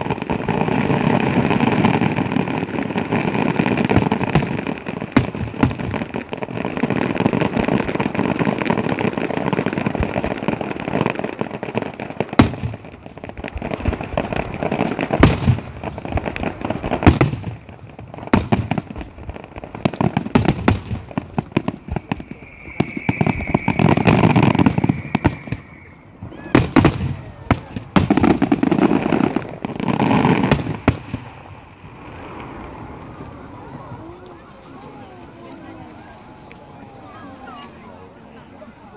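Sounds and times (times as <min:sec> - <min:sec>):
fireworks sharp bangs: 0:00.0 - 0:36.6
fireworks crackling and popping: 0:00.0 - 0:38.9
high whistle: 0:21.9 - 0:26.8.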